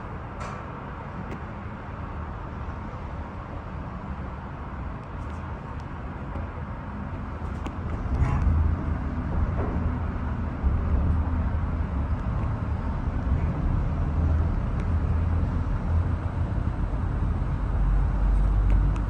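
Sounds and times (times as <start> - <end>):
gondola low rumble: 0.0 - 19.0.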